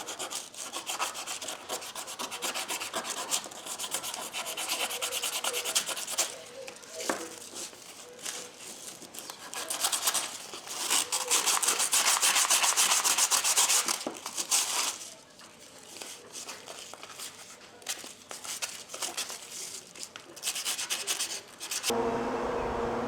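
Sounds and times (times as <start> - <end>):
metal rubbed on sandpaper: 0.0 - 6.5, 7.4 - 15.0.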